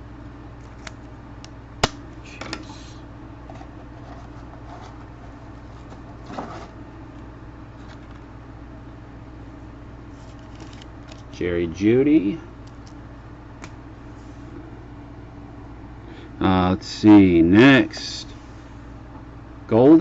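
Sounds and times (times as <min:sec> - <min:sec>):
card and plastic rustling: 0:03.4 - 0:06.8, 0:07.7 - 0:08.3, 0:10.1 - 0:11.4.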